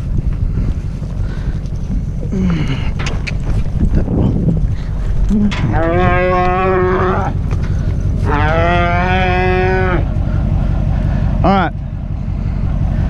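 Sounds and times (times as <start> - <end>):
steady low hum: 0.0 - 13.0
cow mooing: 5.3 - 7.5, 8.2 - 10.2.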